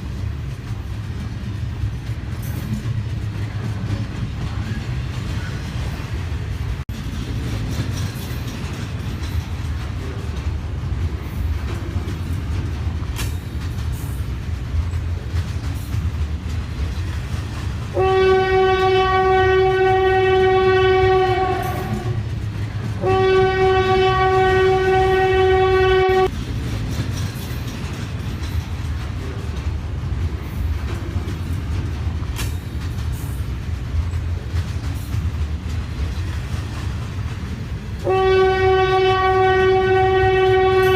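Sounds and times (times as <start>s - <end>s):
train rumbling: 0.0s - 40.9s
locomotive horn blasts: 17.9s - 22.2s, 23.0s - 26.3s, 38.0s - 40.9s.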